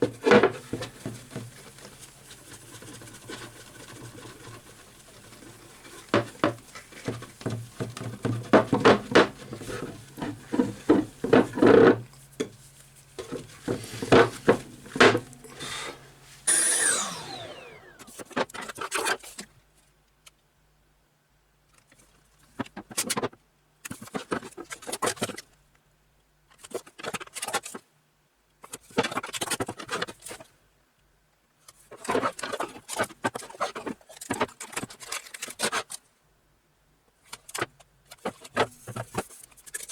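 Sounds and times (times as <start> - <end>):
scraping against sanding disc: 0.0 - 18.1
wood lathe whine: 13.3 - 18.2.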